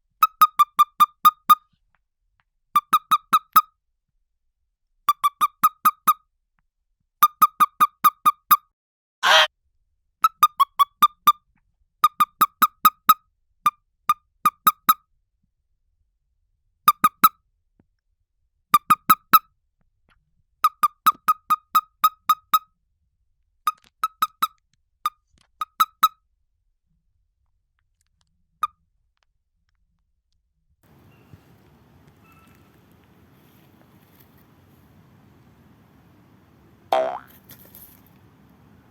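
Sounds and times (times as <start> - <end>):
toad chirping: 0.2 - 1.6, 2.8 - 3.6, 9.2 - 9.5, 23.7 - 24.5, 30.9 - 38.9.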